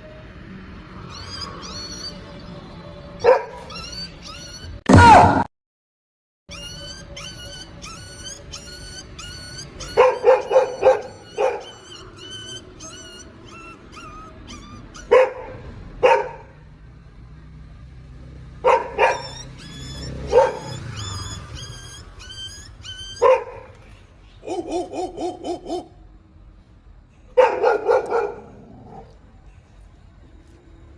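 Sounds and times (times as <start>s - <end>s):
dog barking: 3.2s - 4.0s, 9.8s - 12.5s, 15.0s - 16.6s, 18.6s - 21.2s, 23.2s - 23.8s, 24.4s - 26.0s, 27.4s - 29.1s
chirping electronic tune: 6.5s - 12.8s.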